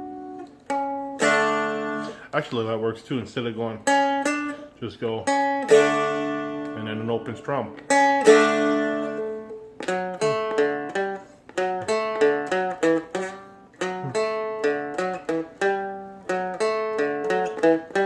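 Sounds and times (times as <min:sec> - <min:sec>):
plucked string melody: 0:00.0 - 0:18.0
drone strings ringing: 0:05.2 - 0:18.0.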